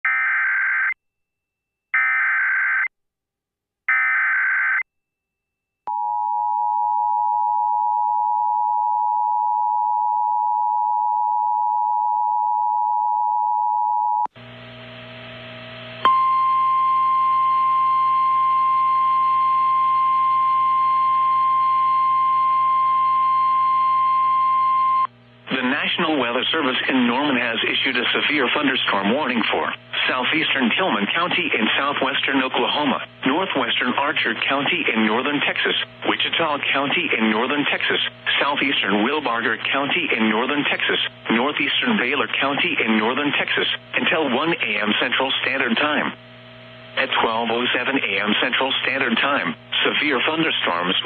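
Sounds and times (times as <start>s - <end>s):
single-pitch warning alarm tone: 15.9s - 25.1s
radio hiss and hum: 25.1s - 51.0s.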